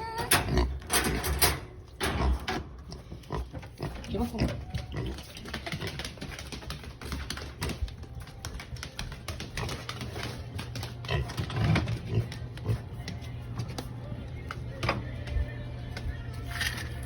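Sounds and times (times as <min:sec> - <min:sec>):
pig grunting: 0:00.0 - 0:01.1, 0:02.0 - 0:06.3
rapid clicking and tapping: 0:04.6 - 0:12.0.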